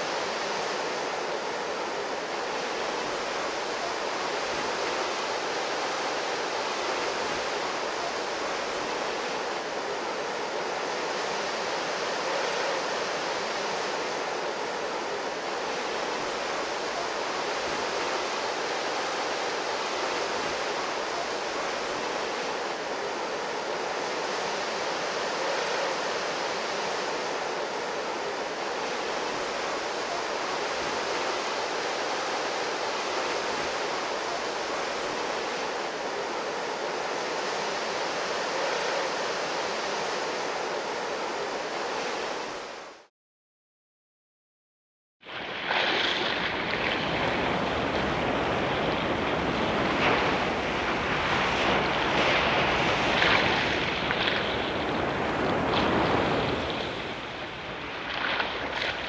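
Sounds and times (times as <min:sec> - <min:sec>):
rushing water: 0:00.0 - 0:42.8, 0:45.2 - 0:59.0.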